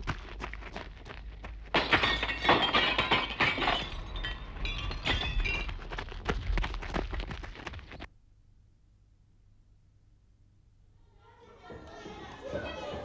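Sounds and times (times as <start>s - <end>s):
glassy clinks and knocks: 1.8s - 5.9s.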